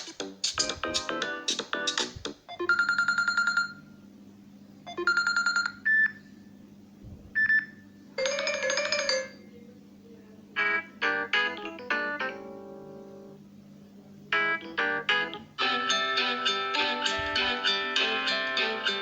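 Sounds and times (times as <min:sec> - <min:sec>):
phone ringtones: 0:01.8 - 0:03.9, 0:04.9 - 0:06.2, 0:07.4 - 0:09.4
steady low hum: 0:05.8 - 0:08.3, 0:09.4 - 0:19.0.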